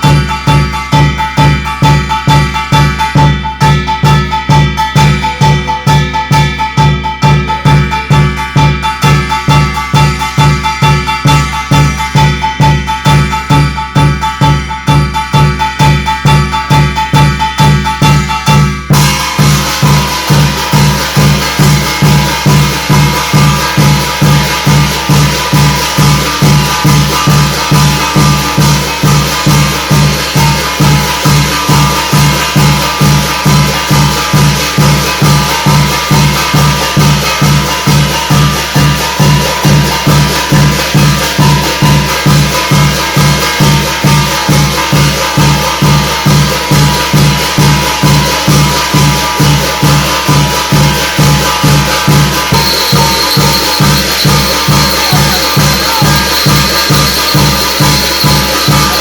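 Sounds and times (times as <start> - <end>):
drum beating fast rhythm: 0.0 - 59.0
rattling percussion: 0.0 - 59.0
held tones: 52.4 - 59.0
high ringing tone: 52.4 - 59.0.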